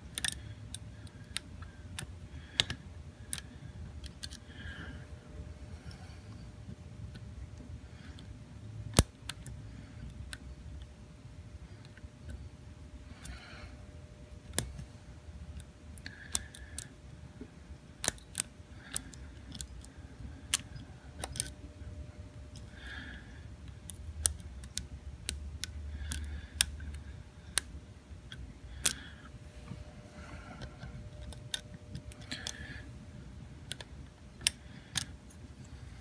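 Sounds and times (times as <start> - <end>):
lock pick metal clicks: 4.0 - 4.4, 18.0 - 19.9, 21.2 - 21.6.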